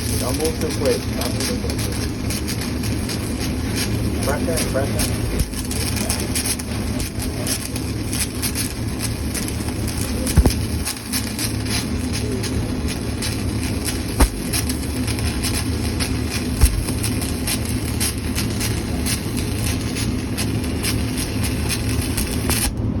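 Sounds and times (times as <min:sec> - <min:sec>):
sharp welding pops: 0:00.0 - 0:22.9
welding arc crackling: 0:00.0 - 0:23.0
low hum: 0:08.0 - 0:22.8.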